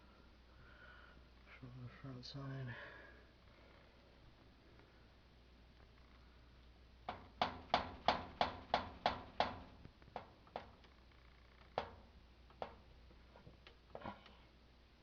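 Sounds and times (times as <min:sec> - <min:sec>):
sharp knocks on a panel: 0:07.1 - 0:10.7, 0:11.8 - 0:12.8.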